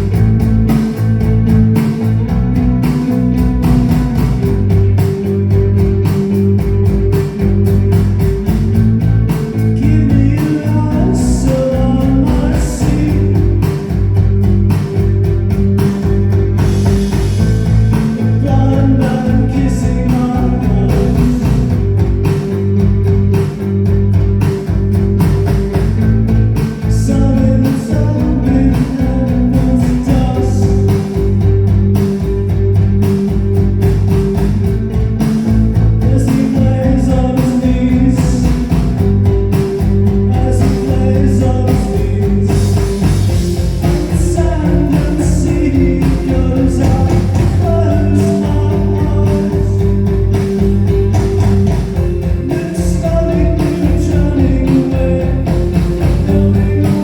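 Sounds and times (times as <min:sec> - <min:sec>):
guitar: 0:00.0 - 0:57.0
live rock band playing: 0:00.0 - 0:57.0
person singing: 0:09.3 - 0:14.8, 0:16.9 - 0:22.8, 0:26.6 - 0:32.0, 0:36.0 - 0:57.0.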